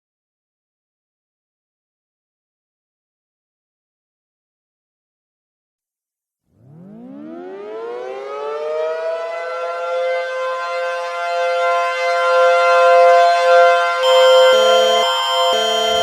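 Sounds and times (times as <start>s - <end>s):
warning siren winding up: 6.6s - 9.1s, 14.0s - 16.0s.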